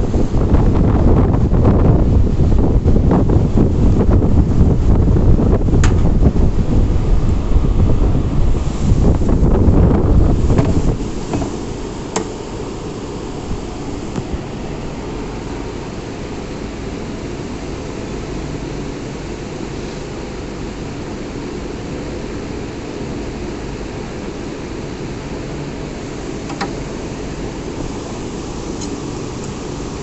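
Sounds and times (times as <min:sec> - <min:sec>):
machinery humming and hissing: 0:00.0 - 0:30.0.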